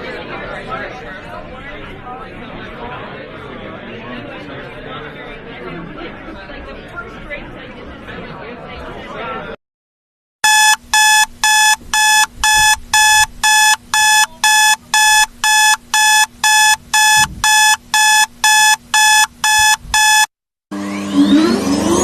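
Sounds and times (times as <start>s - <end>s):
high-pitched alarm beeps: 10.4s - 20.3s.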